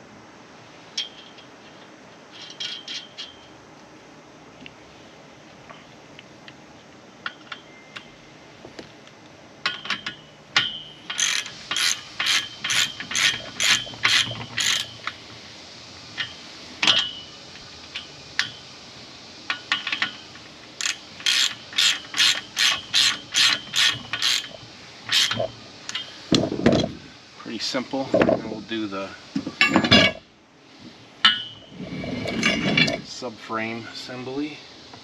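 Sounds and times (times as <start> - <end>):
ratchet clicks: 9.6 - 15.2, 19.4 - 26.4
ratchet wrench ratcheting: 9.7 - 15.2, 19.5 - 26.2.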